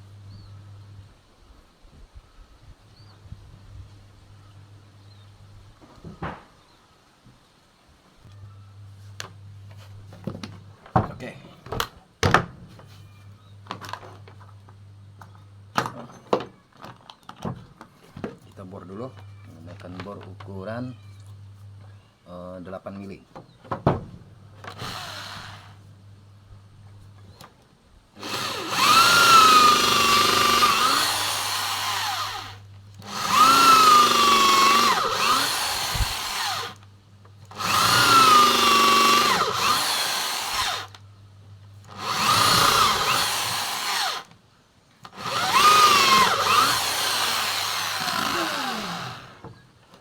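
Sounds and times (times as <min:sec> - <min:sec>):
electric drill boring into wood: 0:24.7 - 0:25.8, 0:28.2 - 0:36.8, 0:37.5 - 0:41.0, 0:41.8 - 0:44.3, 0:45.1 - 0:49.5.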